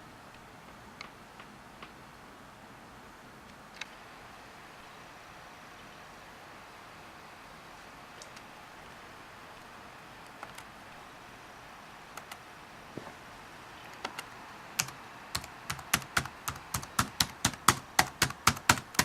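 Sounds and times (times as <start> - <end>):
faint hiss: 0.0 - 19.0
laptop keyboard typing: 10.2 - 10.8, 12.1 - 12.5, 13.9 - 19.0.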